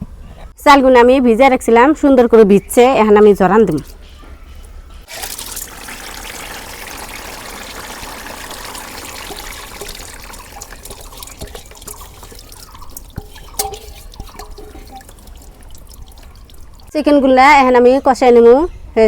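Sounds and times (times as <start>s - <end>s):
water dripping: 5.0s - 17.1s
water trickling from drained rice: 5.1s - 16.9s.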